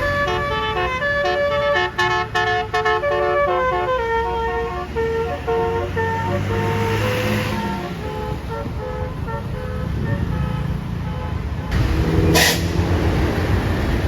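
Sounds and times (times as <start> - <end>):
bus horn playing a tune: 0.0 - 13.4
loud horn blast: 0.0 - 13.4.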